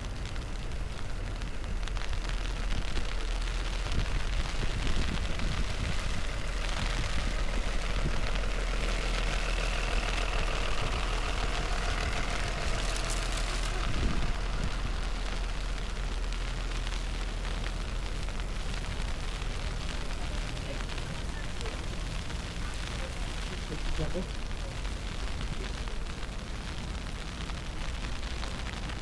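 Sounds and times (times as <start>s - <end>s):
low street rumble: 0.0s - 29.0s
vehicle engines running: 0.0s - 29.0s
faint wavering tones: 3.4s - 26.0s.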